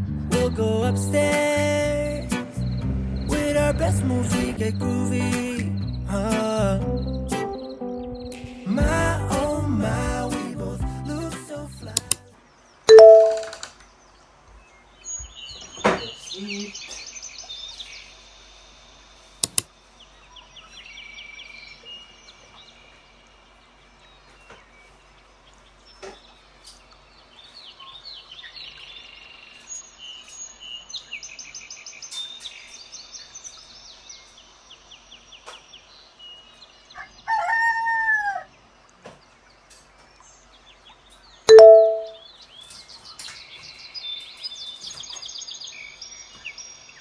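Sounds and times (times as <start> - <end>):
small birds chirping: 0.0 - 37.6, 38.3 - 47.0
rooster crowing: 37.0 - 38.5.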